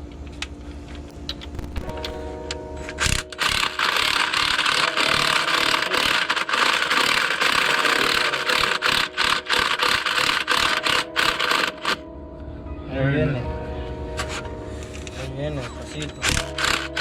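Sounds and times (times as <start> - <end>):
power drill running under load: 3.0 - 12.0, 16.2 - 17.0.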